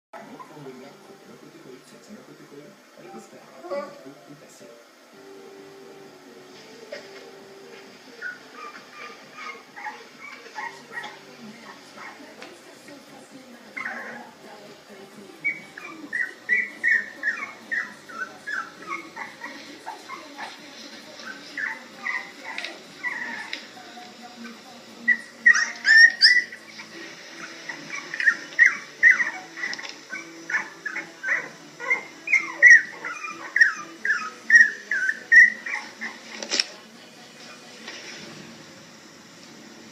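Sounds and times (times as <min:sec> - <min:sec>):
puppy whimpering and yipping: 0:08.2 - 0:11.3, 0:12.0 - 0:12.2, 0:13.8 - 0:14.3, 0:15.4 - 0:20.6, 0:21.2 - 0:23.6, 0:25.1 - 0:36.4.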